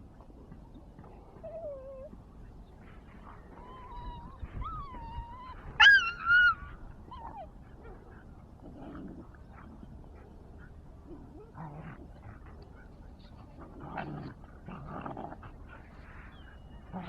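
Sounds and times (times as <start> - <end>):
dog yelping: 4.0 - 6.6.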